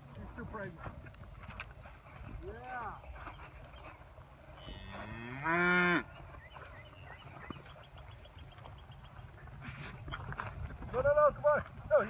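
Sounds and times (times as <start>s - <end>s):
cow mooing: 4.6s - 6.1s.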